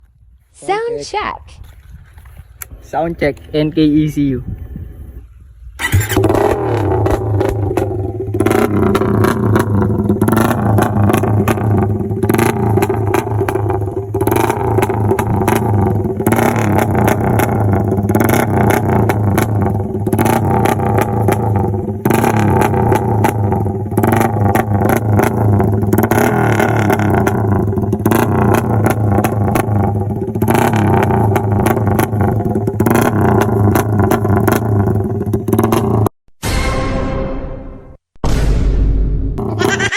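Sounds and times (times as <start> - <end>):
motorcycle engine running: 5.8 - 36.1
sharp exhaust cracks: 5.8 - 36.1.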